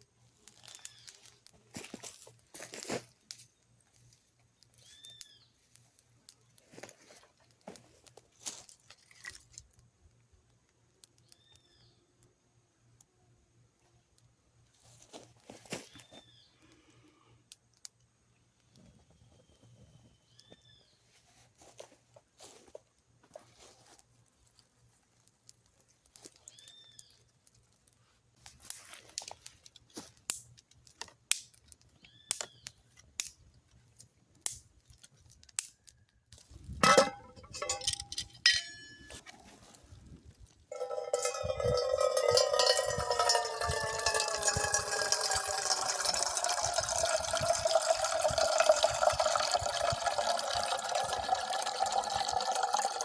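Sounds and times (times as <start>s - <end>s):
light taps and clinks: 36.8s - 39.4s, 40.7s - 53.0s
water pouring into vessel: 40.7s - 53.0s.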